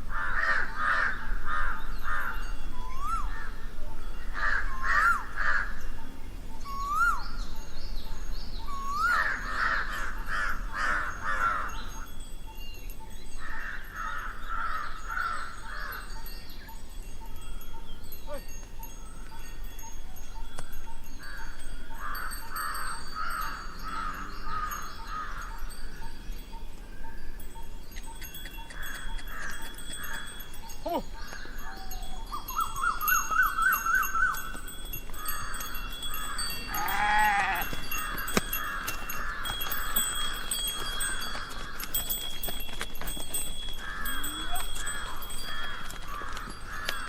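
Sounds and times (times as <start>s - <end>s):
harsh cawing bird calls: 0.1s - 2.5s, 4.3s - 5.8s, 8.7s - 12.1s, 13.4s - 16.4s, 21.2s - 25.8s, 35.1s - 42.0s, 43.7s - 47.0s
whistled bird notes: 2.7s - 3.4s, 6.6s - 9.2s, 30.6s - 34.5s.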